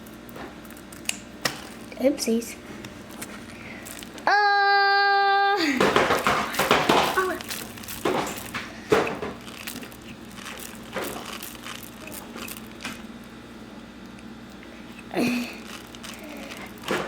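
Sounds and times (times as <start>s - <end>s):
squishy toy crunching and crinkling: 3.8s - 4.2s, 7.0s - 13.2s, 14.9s - 17.0s.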